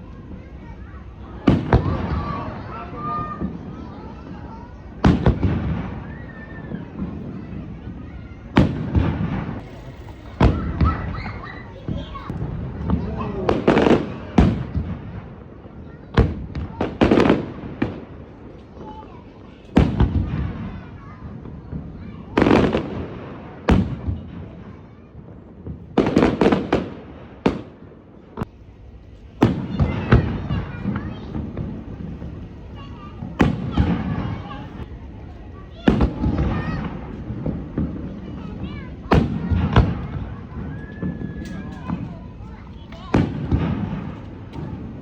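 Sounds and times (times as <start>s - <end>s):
fireworks bursting: 0.0s - 45.0s
fireworks cracks: 0.0s - 45.0s
rumbling echoes: 19.8s - 45.0s.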